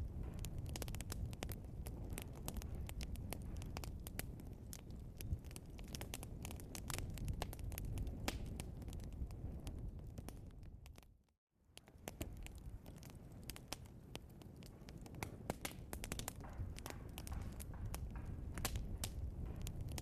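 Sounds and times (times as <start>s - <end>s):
logs crackling and popping: 0.0s - 20.0s
low rumble of fire: 0.0s - 20.0s.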